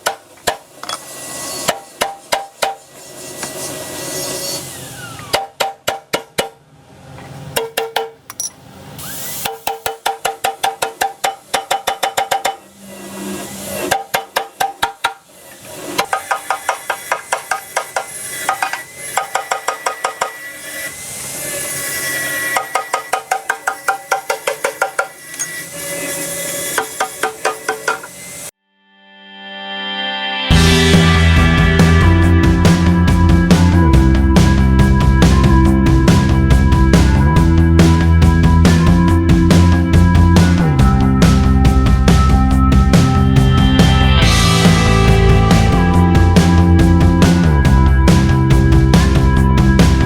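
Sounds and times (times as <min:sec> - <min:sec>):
hammer striking metal: 0:00.0 - 0:03.6, 0:05.2 - 0:06.6, 0:07.5 - 0:08.6, 0:09.4 - 0:12.8, 0:13.8 - 0:15.3, 0:16.0 - 0:20.5, 0:22.4 - 0:25.7, 0:26.7 - 0:28.3.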